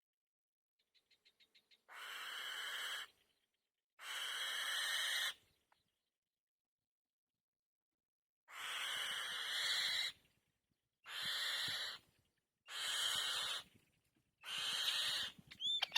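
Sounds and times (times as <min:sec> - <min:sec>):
bird chick hissing screeches: 0:11.1 - 0:12.0, 0:12.7 - 0:13.6, 0:14.5 - 0:15.9
bird chick ticking: 0:15.5 - 0:15.9.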